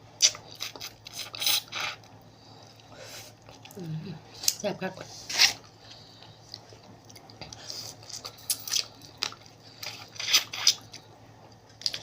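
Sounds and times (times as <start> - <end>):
close-up chewing: 5.5 - 12.0.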